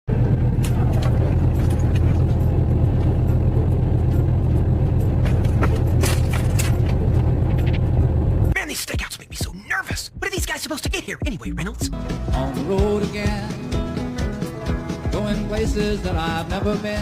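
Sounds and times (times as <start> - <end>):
loud low rumble: 0.1 - 8.6.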